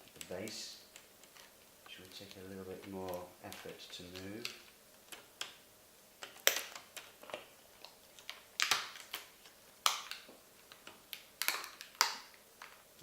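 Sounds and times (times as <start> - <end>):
plastic clips snapping loose: 6.2 - 12.8.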